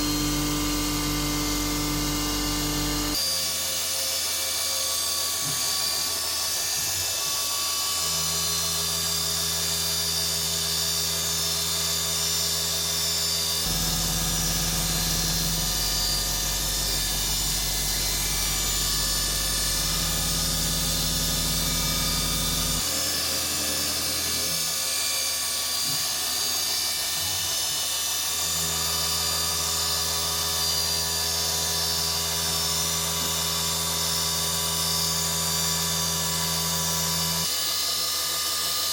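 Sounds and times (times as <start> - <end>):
milling spindle whine: 5.0 - 26.6
stepper motors humming: 13.7 - 24.6.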